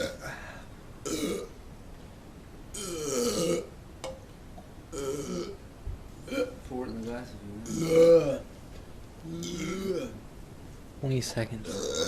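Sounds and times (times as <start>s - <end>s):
man belching: 0.0s - 0.3s, 1.0s - 1.6s, 2.7s - 3.7s, 4.9s - 5.6s, 6.2s - 6.6s, 7.6s - 8.5s, 9.3s - 10.2s, 11.6s - 12.0s.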